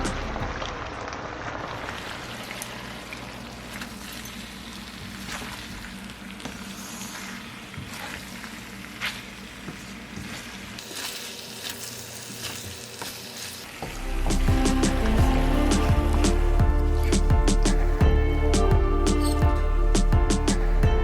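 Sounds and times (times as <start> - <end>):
food sizzling in a pan: 0.5 - 14.0.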